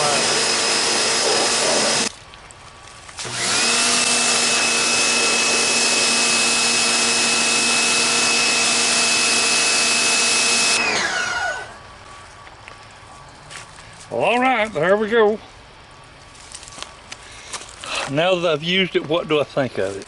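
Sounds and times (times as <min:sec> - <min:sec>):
pressure washer motor running: 0:00.0 - 0:02.1, 0:03.2 - 0:11.7.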